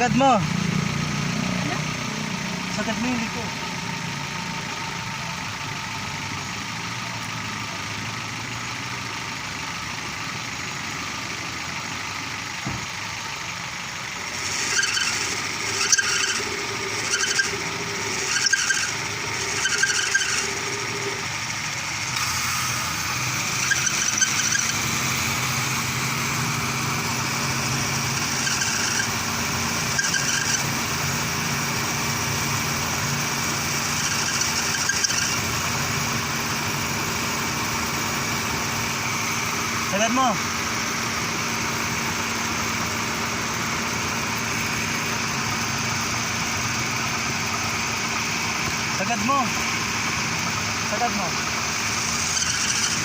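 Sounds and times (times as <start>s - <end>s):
car engine idling: 0.0s - 53.0s
power steering belt squealing: 13.2s - 53.0s.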